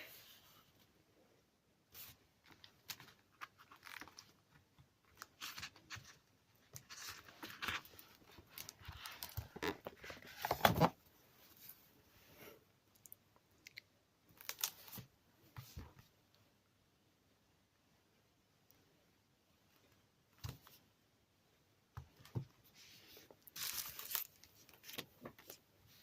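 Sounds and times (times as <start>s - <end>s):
packaging rustling and crinkling: 23.4s - 25.6s.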